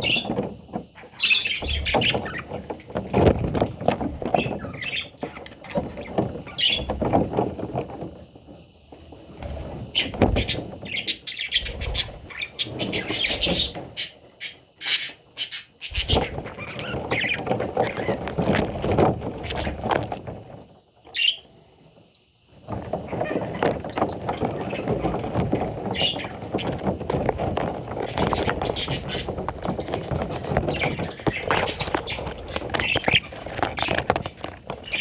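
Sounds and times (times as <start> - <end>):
parrots chattering: 10.4 - 18.6, 28.1 - 34.2.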